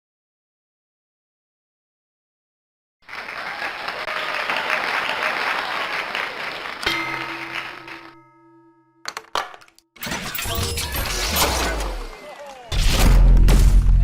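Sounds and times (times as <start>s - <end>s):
applause: 3.0s - 8.2s.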